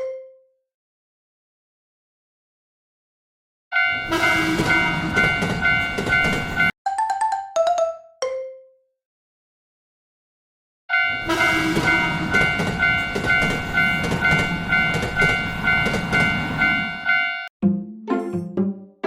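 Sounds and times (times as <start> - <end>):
railroad crossing warning bell: 3.7 - 6.8, 10.9 - 17.5.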